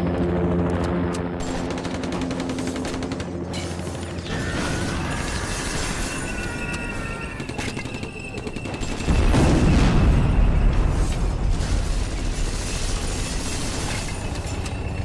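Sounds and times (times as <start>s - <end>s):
mechanical clanking and creaking: 10.2s - 15.0s.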